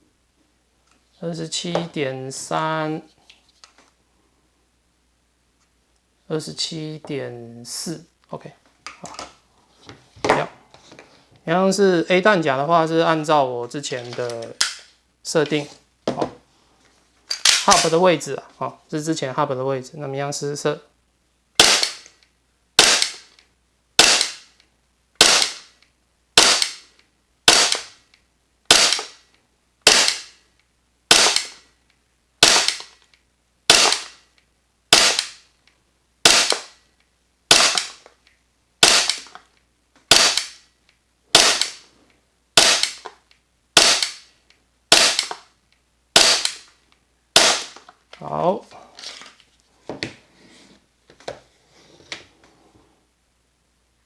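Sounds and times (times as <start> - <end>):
airsoft pistol shots: 21.6 - 22.1, 22.8 - 23.3, 24.0 - 24.5, 25.2 - 25.7, 26.4 - 26.8, 27.5 - 28.0, 28.7 - 29.2, 29.8 - 30.4, 31.1 - 31.6, 32.4 - 32.9, 33.7 - 34.2, 34.9 - 35.4, 36.2 - 36.8, 37.5 - 38.0, 38.8 - 39.3, 40.1 - 40.6, 41.3 - 41.8, 42.6 - 43.0, 43.8 - 44.3, 44.9 - 45.4, 46.2 - 46.7, 47.4 - 47.8.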